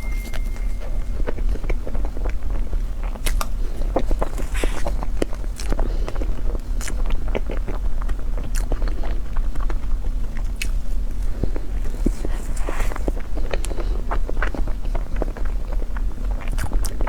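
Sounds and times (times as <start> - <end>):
steady low hum: 0.0 - 1.9
biting and chewing food: 3.2 - 17.0.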